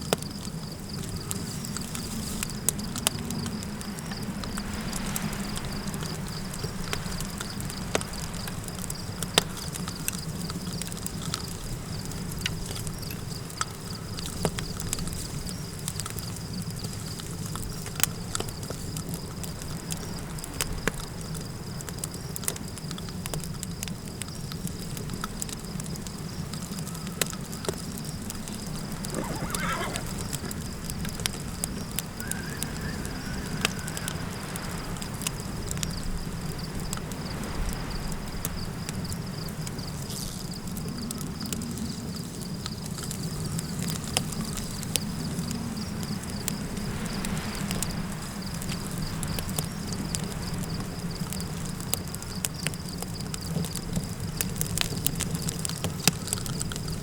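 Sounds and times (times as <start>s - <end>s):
low wind rumble: 0.0s - 15.7s, 28.1s - 51.8s
campfire crackling and popping: 0.0s - 37.2s, 37.8s - 57.0s
high insect drone: 27.7s - 52.0s
horse whinnying: 28.9s - 30.6s, 32.2s - 34.2s.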